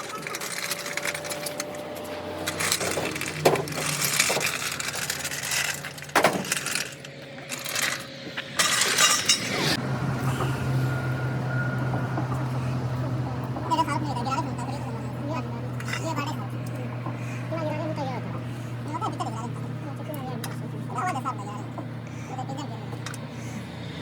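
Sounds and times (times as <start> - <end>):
metal tools clinking: 0.0 - 9.8, 15.7 - 17.2
engine humming: 0.0 - 24.0.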